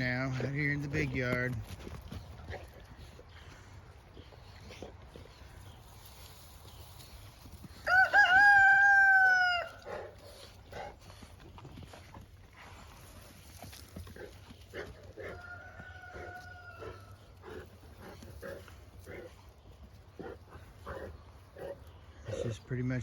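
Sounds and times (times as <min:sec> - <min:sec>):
rooster crowing: 0:07.8 - 0:09.9, 0:15.2 - 0:17.2.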